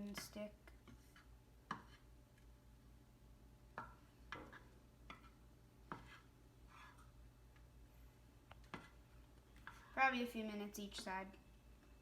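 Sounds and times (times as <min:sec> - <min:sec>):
spatula tapping frying pan: 0:03.7 - 0:06.2.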